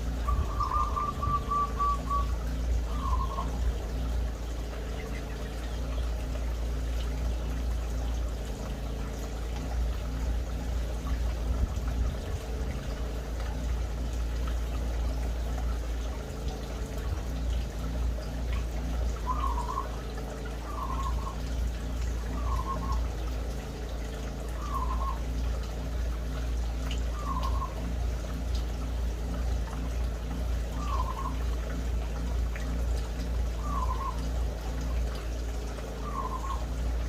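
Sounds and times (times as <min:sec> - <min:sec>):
bird wavering calls: 0:00.0 - 0:06.4, 0:16.1 - 0:28.4, 0:29.2 - 0:37.0
low hum: 0:00.0 - 0:37.0.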